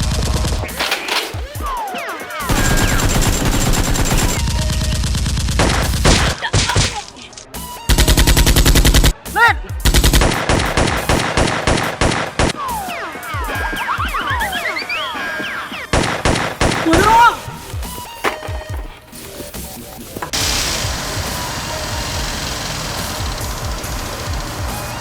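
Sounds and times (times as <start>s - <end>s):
automatic gunfire sound effects: 2.5s - 6.4s.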